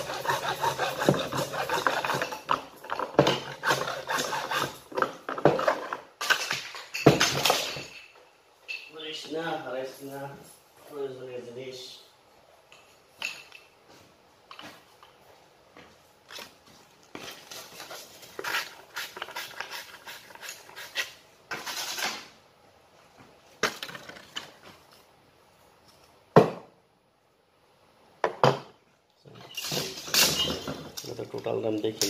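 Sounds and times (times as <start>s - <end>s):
tools and pipe parts clattering: 0.0s - 9.1s, 12.6s - 13.9s, 17.2s - 22.3s, 23.6s - 25.0s, 29.3s - 32.0s.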